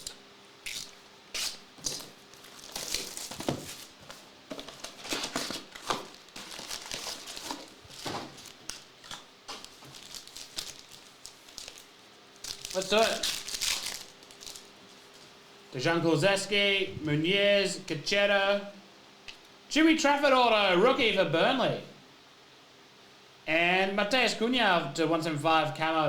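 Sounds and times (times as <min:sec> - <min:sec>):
wrappers tearing and crinkling: 0:00.0 - 0:15.3.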